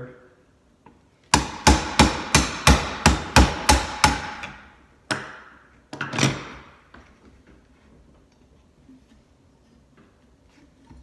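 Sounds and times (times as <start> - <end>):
hammer striking screwdriver: 1.4 - 4.6.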